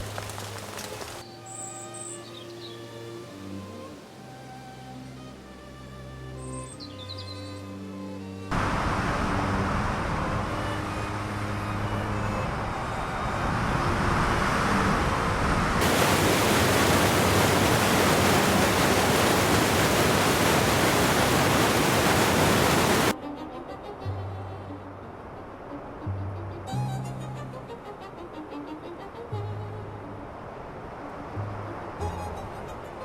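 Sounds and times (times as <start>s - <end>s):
dense rushing noise: 13.8s - 23.2s.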